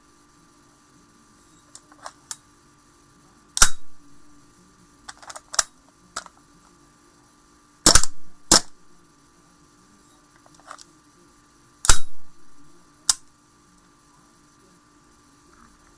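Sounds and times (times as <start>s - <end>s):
airsoft pistol shots: 3.6s - 4.1s, 7.9s - 8.8s, 11.8s - 12.7s.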